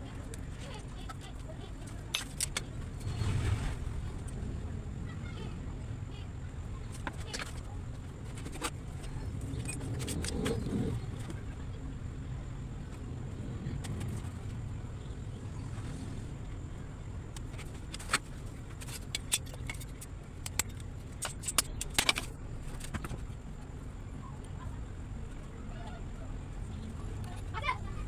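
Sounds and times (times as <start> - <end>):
low rumble: 1.9 - 7.0.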